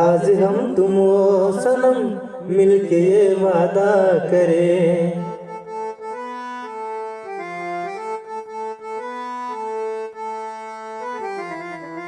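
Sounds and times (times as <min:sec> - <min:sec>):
accordion-like reed instrument melody: 0:05.2 - 0:12.0.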